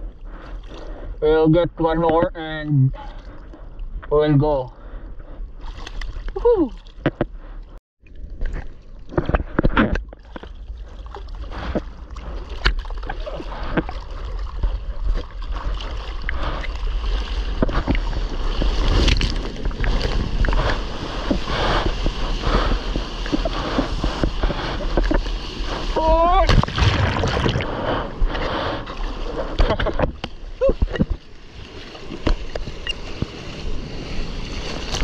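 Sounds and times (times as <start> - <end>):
wind rumble on microphone: 8.2 - 35.0
sea water splashing: 10.2 - 35.0.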